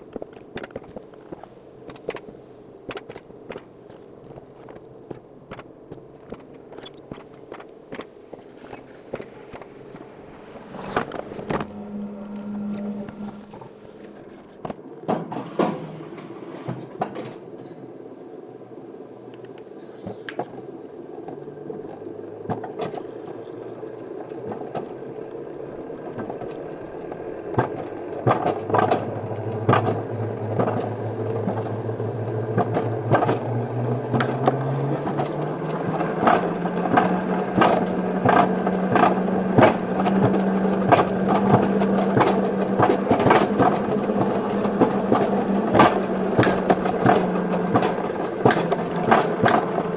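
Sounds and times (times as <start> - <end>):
coaster wheel hum on rails: 0.0 - 49.9
sharp clacks and rattles: 26.0 - 49.9.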